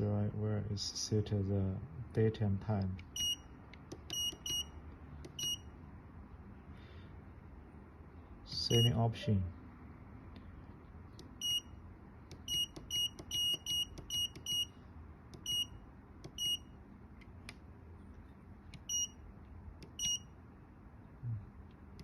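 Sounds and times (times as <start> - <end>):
keypad buzzer beeps: 3.2 - 5.7, 8.7 - 9.0, 11.4 - 11.7, 12.4 - 14.7, 15.4 - 16.7, 18.9 - 19.2, 19.9 - 20.3.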